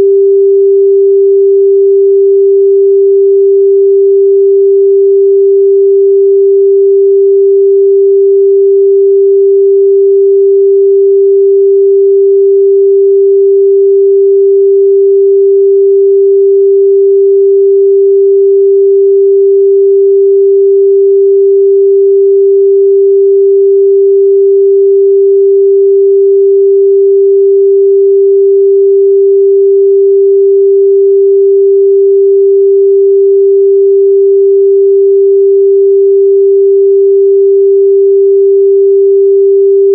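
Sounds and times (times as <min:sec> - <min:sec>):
sine-wave test tone: 0:00.0 - 0:39.9.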